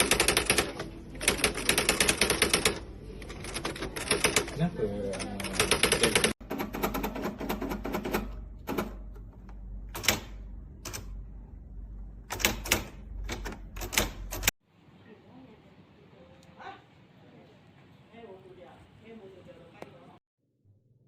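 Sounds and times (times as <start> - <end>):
electronic typewriter typing: 0.0 - 11.2, 12.2 - 14.5.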